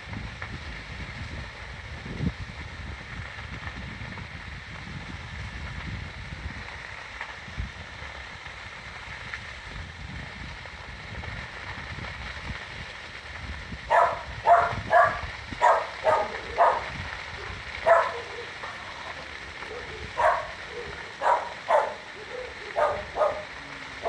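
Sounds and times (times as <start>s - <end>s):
dog barking: 13.9s - 24.0s.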